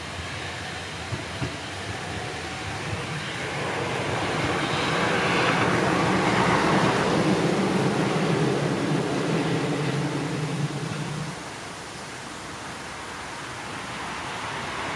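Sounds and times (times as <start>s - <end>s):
electric train running past: 0.0s - 14.9s.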